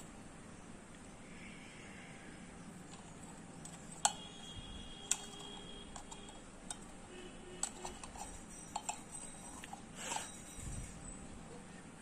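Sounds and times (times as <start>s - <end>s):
small parts and tools clicking: 2.8s - 11.0s.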